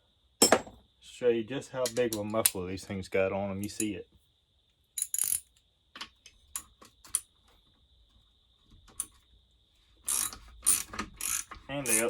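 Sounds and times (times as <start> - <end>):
socket ratchet clicking: 5.0 - 5.5, 10.1 - 12.0.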